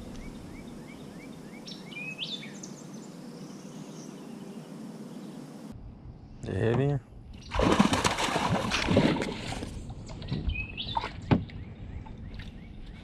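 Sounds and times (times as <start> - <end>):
rising bird chirp: 0.0 - 6.4, 10.0 - 13.0
water sloshing around boat: 7.5 - 13.0.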